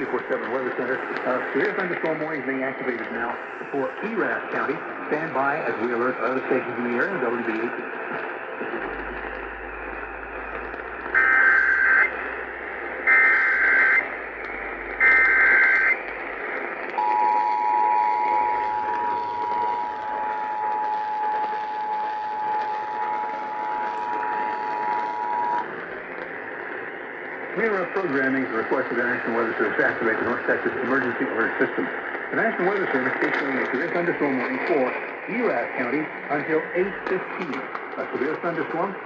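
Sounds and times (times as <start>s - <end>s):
radio hiss: 0.0s - 39.0s
digital data bursts: 8.4s - 26.9s.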